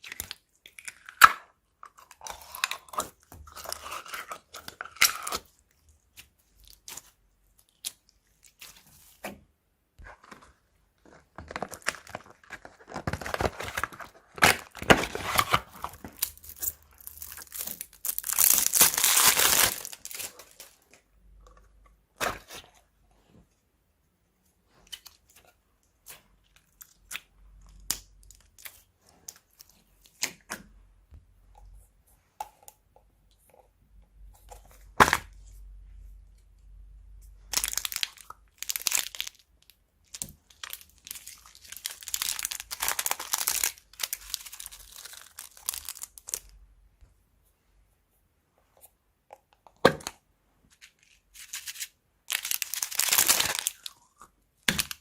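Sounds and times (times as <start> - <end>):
dense crackling of slime: 52.3 - 55.0.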